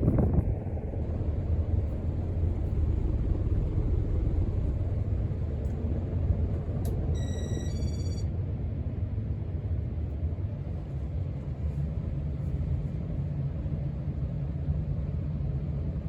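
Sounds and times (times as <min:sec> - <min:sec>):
ceiling fan wind buffeting: 0:00.0 - 0:07.2
short electronic beep: 0:07.2 - 0:08.3.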